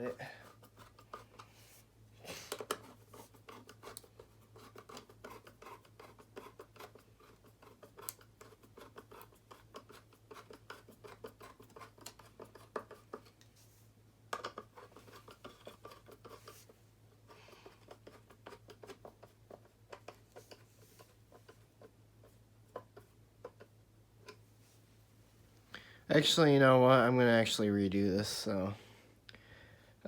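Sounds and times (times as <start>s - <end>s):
clicking and scratching of wire handling: 0.0s - 1.6s, 2.4s - 13.6s, 14.3s - 24.4s.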